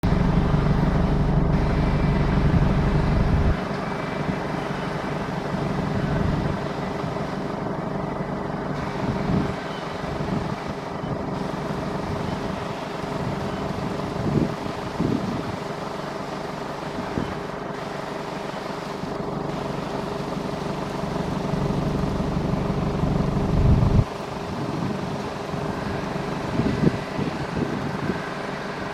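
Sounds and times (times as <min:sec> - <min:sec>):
tractor and baler running: 0:00.0 - 0:28.9.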